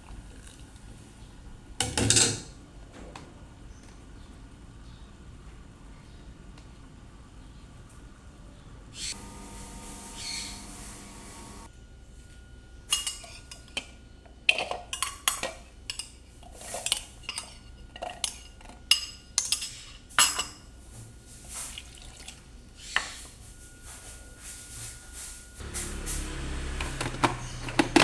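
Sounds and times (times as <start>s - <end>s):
utensils clinking against cookware: 12.9s - 13.9s, 14.5s - 20.8s, 25.6s - 28.0s.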